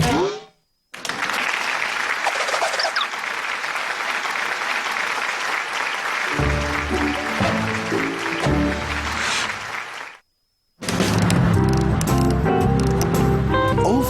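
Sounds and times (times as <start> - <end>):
audience applauding: 1.0 - 10.2
music: 6.3 - 9.8, 10.9 - 14.0.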